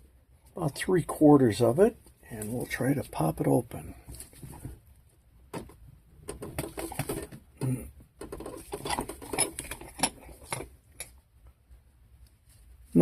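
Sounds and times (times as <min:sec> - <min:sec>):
clicks and scrapes in bench vise: 0:08.2 - 0:11.2.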